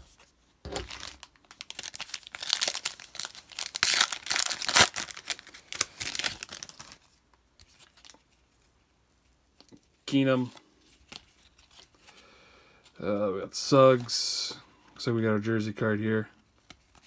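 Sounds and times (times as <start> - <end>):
foil wrapper tearing and crinkling: 0.8 - 7.1.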